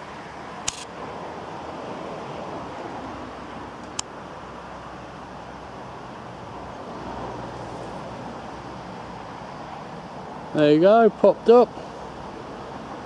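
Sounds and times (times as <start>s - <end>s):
sharp click: 0.6s - 0.9s.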